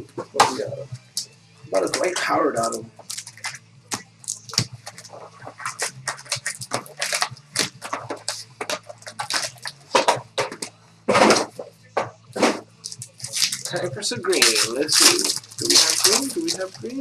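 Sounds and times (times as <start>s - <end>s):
wrappers crinkling and rustling: 2.6s - 3.6s, 4.2s - 9.9s, 12.8s - 17.0s.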